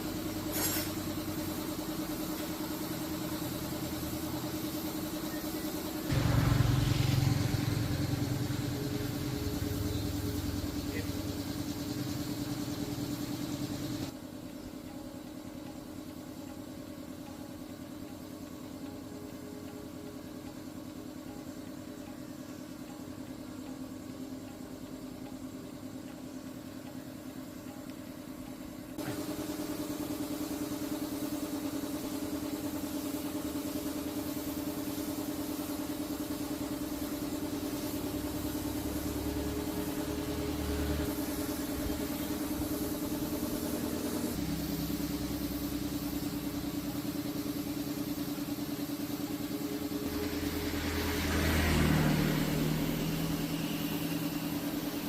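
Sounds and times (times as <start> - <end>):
truck engine idling: 3.2 - 14.1.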